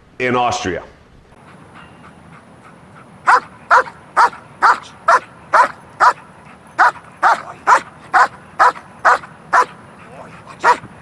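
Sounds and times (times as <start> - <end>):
dog barking: 3.3 - 6.2, 6.8 - 9.7, 10.6 - 10.8.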